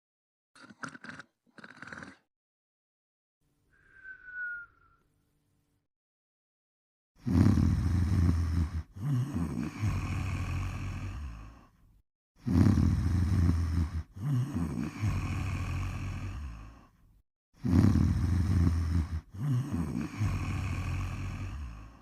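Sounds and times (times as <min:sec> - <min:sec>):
loud low snoring: 0:00.6 - 0:02.3, 0:07.2 - 0:11.8, 0:12.4 - 0:17.0, 0:17.6 - 0:22.0
breathing: 0:07.3 - 0:11.9, 0:12.5 - 0:17.1, 0:17.8 - 0:22.0.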